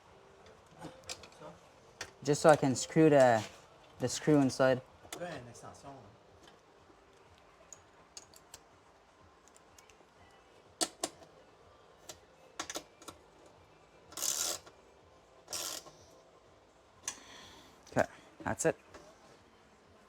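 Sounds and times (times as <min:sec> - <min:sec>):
tools and metal parts clicking: 0:07.7 - 0:08.6, 0:14.1 - 0:14.7, 0:15.5 - 0:16.0.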